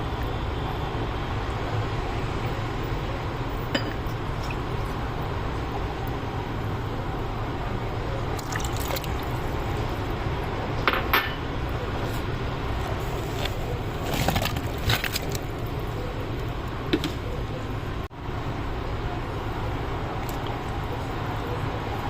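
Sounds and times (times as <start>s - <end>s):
liquid sounds: 8.3s - 10.1s, 12.7s - 15.9s.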